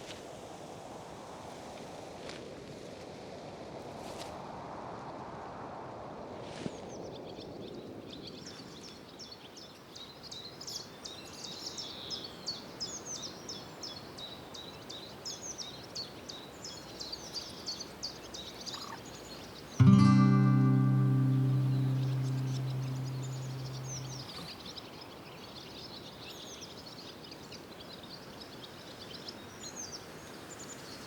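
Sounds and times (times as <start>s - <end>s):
small birds chirping: 21.5s - 24.5s.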